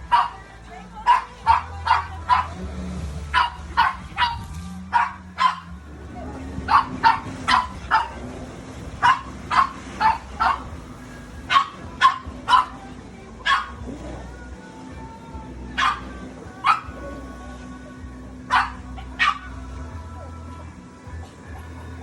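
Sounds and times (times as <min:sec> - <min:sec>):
dog barking: 0:00.0 - 0:00.4, 0:01.0 - 0:02.6, 0:03.3 - 0:05.8, 0:06.6 - 0:08.2, 0:09.0 - 0:10.8, 0:11.5 - 0:12.8, 0:13.4 - 0:13.8, 0:15.8 - 0:17.2, 0:18.4 - 0:19.7
low steady hum: 0:00.0 - 0:22.0.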